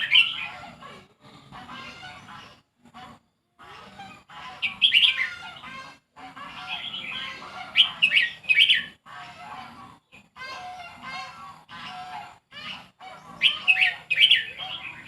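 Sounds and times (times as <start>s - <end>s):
songbird singing gliding phrases: 0.0s - 0.7s, 4.5s - 5.7s, 6.6s - 9.0s, 12.7s - 15.0s
other birds chirping: 0.0s - 15.0s.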